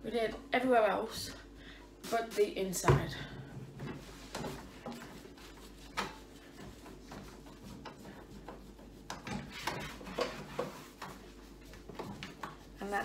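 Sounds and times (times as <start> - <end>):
steady low hum: 0.0 - 13.0
wiping microwave door: 3.8 - 13.0.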